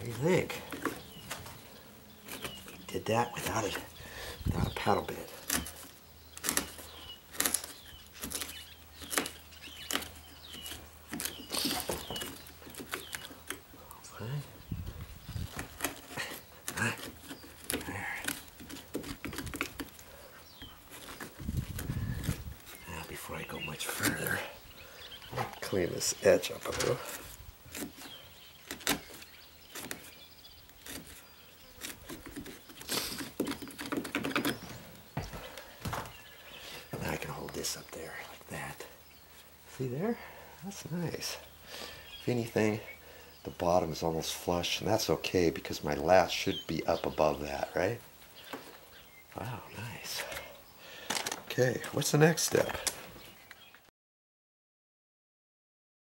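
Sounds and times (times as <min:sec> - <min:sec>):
wood chisel scraping wood: 0:00.0 - 0:13.7, 0:15.3 - 0:22.9, 0:25.3 - 0:37.9.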